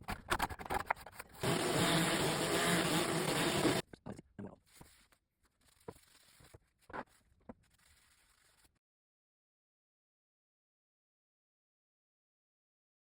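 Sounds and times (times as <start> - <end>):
loud power tool: 1.4 - 3.8.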